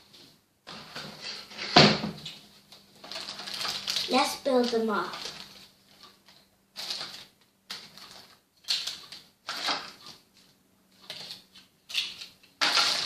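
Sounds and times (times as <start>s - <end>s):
plastic toys clicking and rustling: 3.0s - 13.0s.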